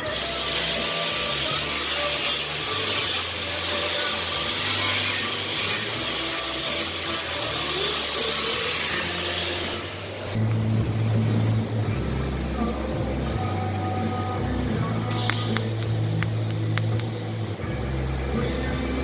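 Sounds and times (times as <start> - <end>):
abrasive scraping on metal pipe: 0.0 - 10.4.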